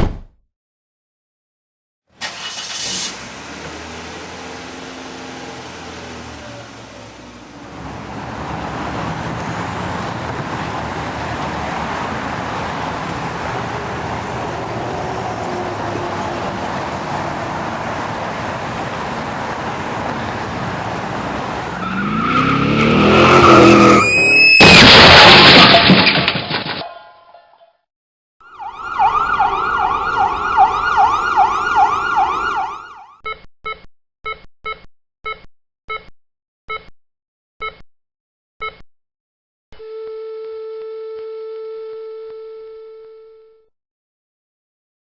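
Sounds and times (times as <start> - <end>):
car crash: 21.9 - 27.1, 28.5 - 33.0
car engine running: 28.7 - 32.9.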